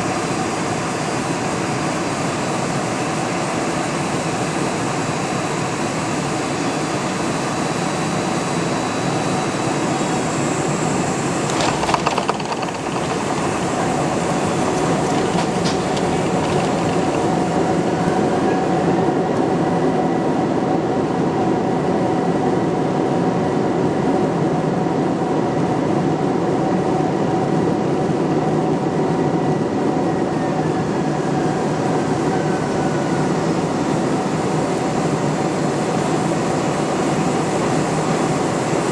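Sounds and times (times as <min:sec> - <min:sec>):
airplane cabin rumble and air rush: 0:00.0 - 0:38.9
rattling clatter: 0:11.4 - 0:18.0.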